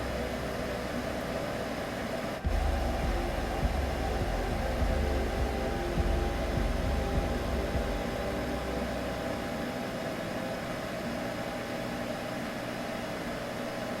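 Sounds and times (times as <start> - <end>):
droning hum: 0.0 - 14.0
low rumble: 2.4 - 9.8.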